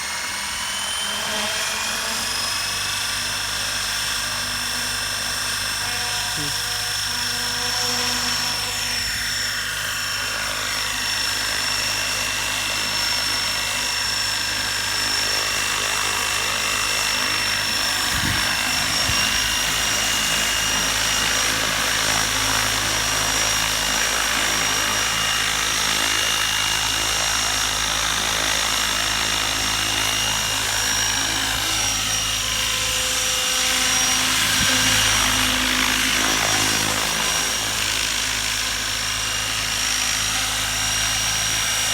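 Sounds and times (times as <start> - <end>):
rc helicopter motor whine: 0.0 - 41.9
wind buffeting microphone: 17.8 - 19.9.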